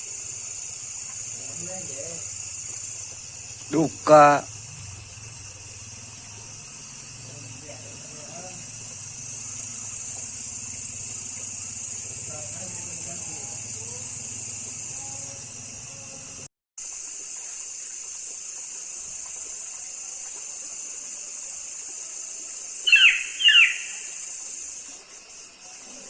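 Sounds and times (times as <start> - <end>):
steady high hiss: 0.0 - 26.0
downward-sweeping animal calls: 22.8 - 24.3.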